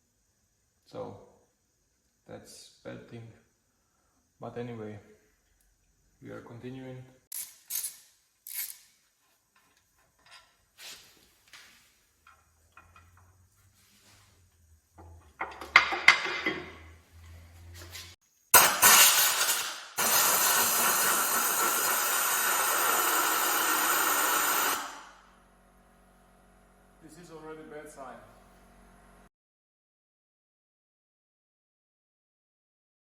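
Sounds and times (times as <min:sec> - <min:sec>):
compressed air hissing: 0:18.6 - 0:25.1.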